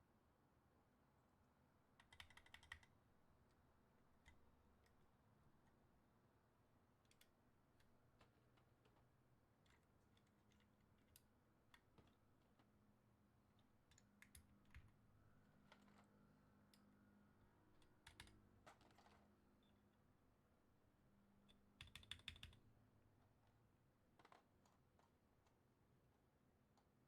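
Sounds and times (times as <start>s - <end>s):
typing on mechanical keyboard: 2.0s - 2.9s, 17.8s - 19.1s, 21.8s - 22.6s.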